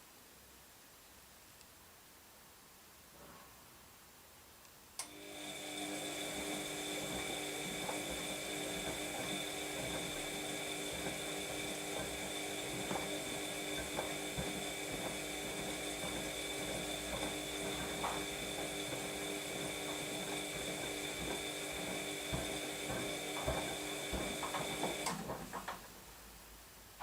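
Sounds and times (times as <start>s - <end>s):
washing machine motor hum: 5.0s - 26.1s
drum clicking and knocking: 7.8s - 25.9s.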